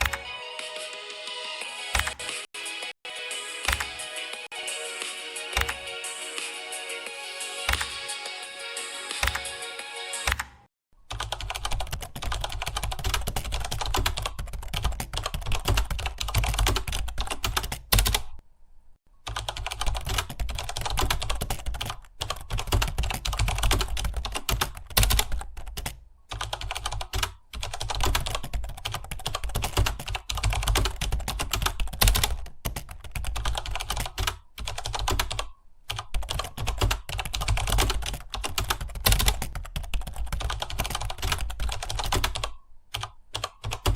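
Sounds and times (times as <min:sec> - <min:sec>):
fast typing on keyboard: 0:05.6 - 0:05.8, 0:07.6 - 0:08.0, 0:09.2 - 0:09.5, 0:10.2 - 0:18.4, 0:19.3 - 0:43.9.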